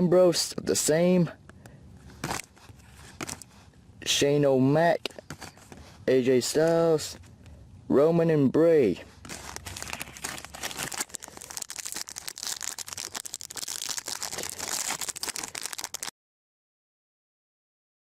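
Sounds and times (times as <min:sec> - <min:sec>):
plastic wrapper crinkling and tearing: 0:09.2 - 0:16.1.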